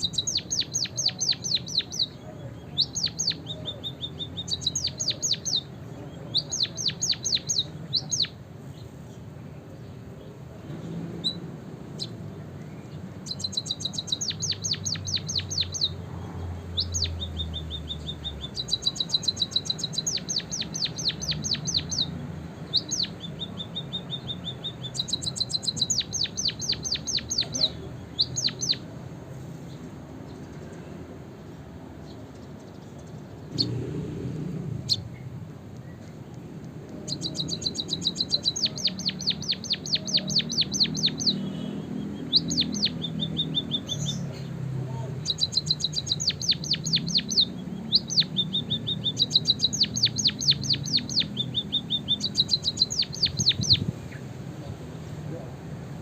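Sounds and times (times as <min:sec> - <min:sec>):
bird song with rapid trills: 0:00.0 - 0:28.9, 0:29.6 - 0:55.1
single bird chirps: 0:13.2 - 0:16.0, 0:16.7 - 0:28.8, 0:36.9 - 0:44.5, 0:45.2 - 0:54.2.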